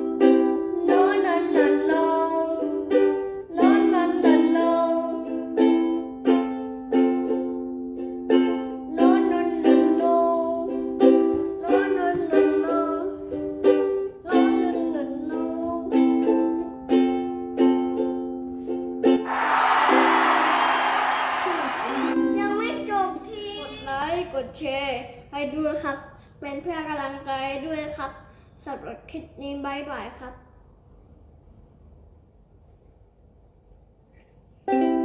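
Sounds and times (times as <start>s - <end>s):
ukulele strumming: 0.0s - 20.9s, 21.5s - 23.5s, 34.7s - 35.0s
person singing: 0.7s - 2.7s, 3.5s - 5.4s, 8.9s - 10.8s, 11.6s - 13.1s, 14.2s - 16.1s.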